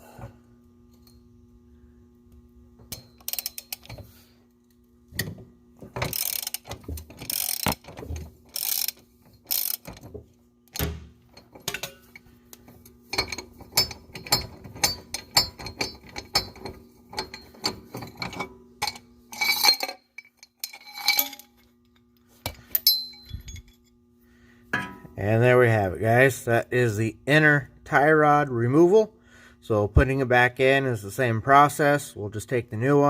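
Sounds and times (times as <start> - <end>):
steady low hum: 0.0 - 33.0
socket ratchet clicking: 2.9 - 4.0, 6.0 - 10.0
metallic clink: 13.1 - 23.9.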